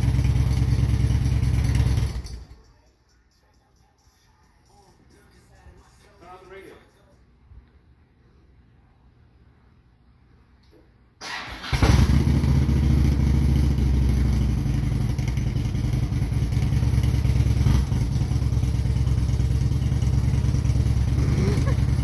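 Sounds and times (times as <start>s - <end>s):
motorcycle engine running: 0.0s - 2.5s, 11.6s - 22.0s
motorcycle starter cranking: 11.2s - 13.8s.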